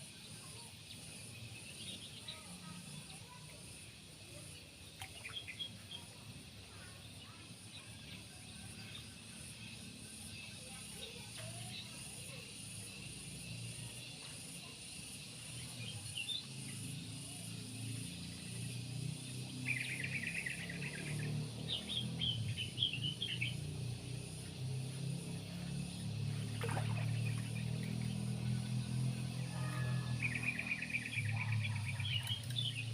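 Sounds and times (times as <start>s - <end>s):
high insect drone: 0.0s - 32.9s
birds chirping: 18.5s - 32.9s.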